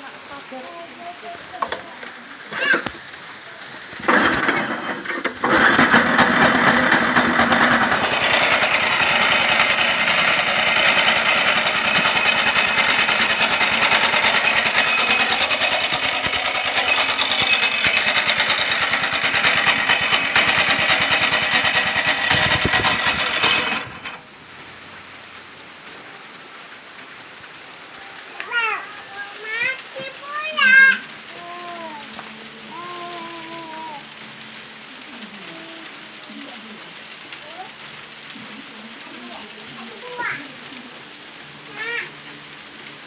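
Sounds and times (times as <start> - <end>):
small petrol engine running: 2.5 - 3.0, 3.8 - 24.3.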